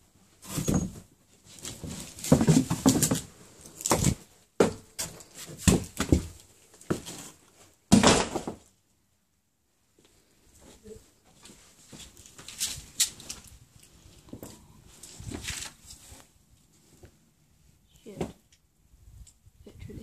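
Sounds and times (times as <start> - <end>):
people climbing over debris: 0.3 - 8.8, 10.6 - 16.3.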